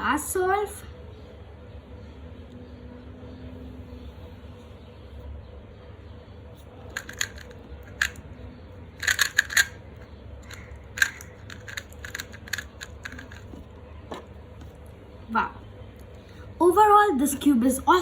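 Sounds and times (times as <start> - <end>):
plastic puzzle cube clicking: 6.9 - 8.2, 9.0 - 9.8, 10.4 - 13.7.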